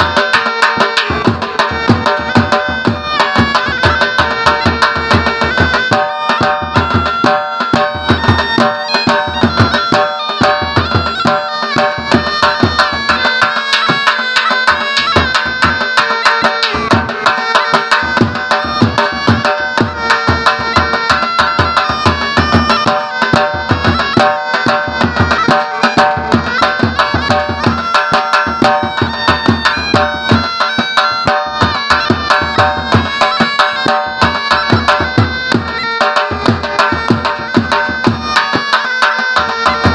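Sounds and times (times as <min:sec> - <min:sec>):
fast drum rhythm: 0:00.0 - 0:39.9
shehnai melody: 0:00.0 - 0:39.9.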